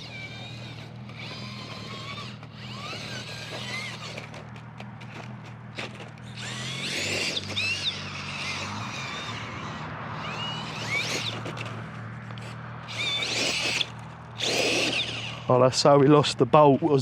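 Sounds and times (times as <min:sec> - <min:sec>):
electric motor and gearbox whining: 0:00.0 - 0:17.0.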